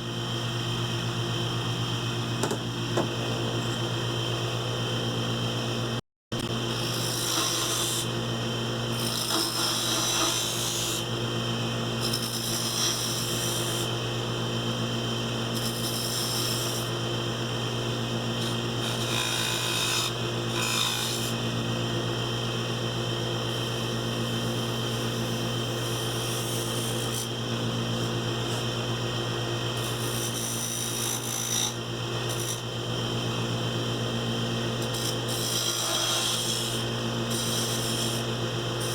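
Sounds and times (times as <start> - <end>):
tool scraping spinning wood: 8.9 - 11.1, 34.8 - 38.9.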